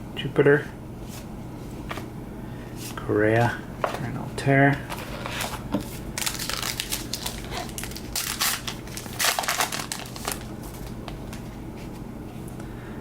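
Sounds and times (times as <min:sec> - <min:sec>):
cards shuffling: 0:04.7 - 0:12.1
foil wrapper crinkling: 0:05.3 - 0:11.5.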